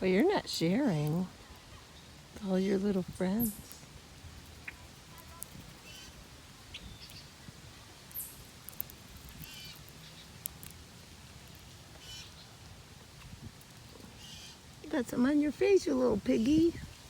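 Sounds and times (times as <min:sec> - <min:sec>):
birds giving harsh calls: 0:03.4 - 0:07.4, 0:08.1 - 0:10.7, 0:11.9 - 0:12.5, 0:14.1 - 0:14.6.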